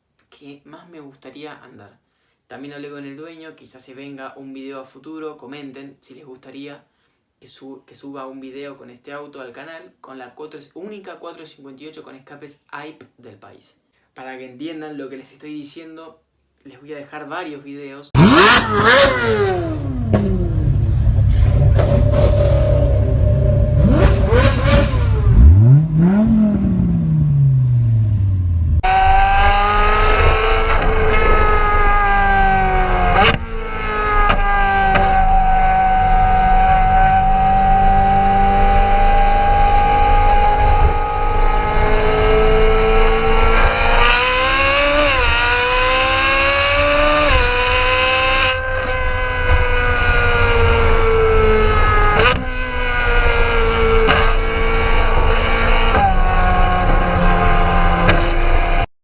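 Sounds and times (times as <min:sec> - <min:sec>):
car engine revving: 0:18.2 - 0:58.9.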